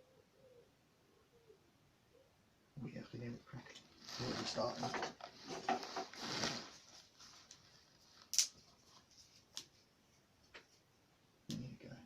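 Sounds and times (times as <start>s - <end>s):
small fire crackling: 3.4s - 12.0s.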